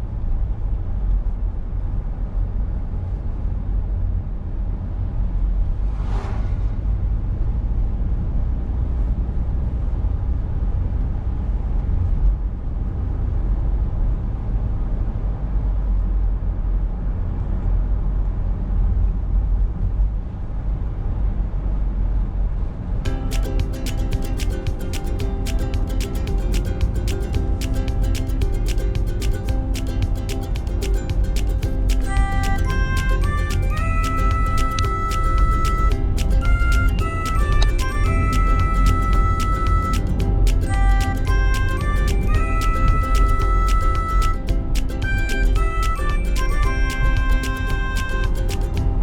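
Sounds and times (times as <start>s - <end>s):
brief hiss: 5.9s - 6.8s.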